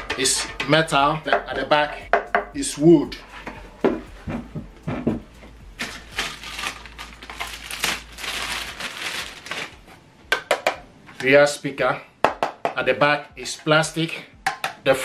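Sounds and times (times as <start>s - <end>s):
packaging rustling and crinkling: 5.8s - 10.0s.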